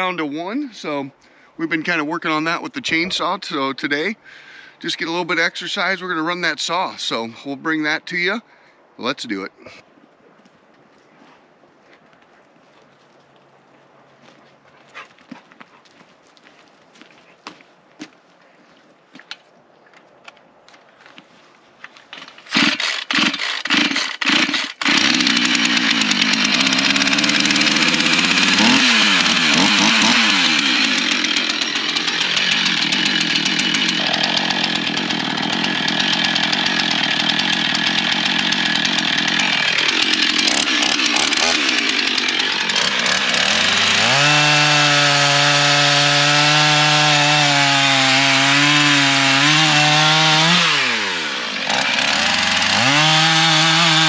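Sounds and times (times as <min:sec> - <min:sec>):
chainsaw cutting wood: 0:22.1 - 0:54.0.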